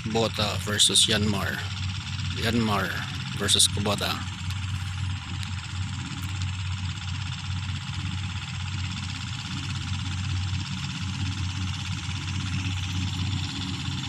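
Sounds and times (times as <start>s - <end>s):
combine harvester engine hum: 0.0s - 14.0s.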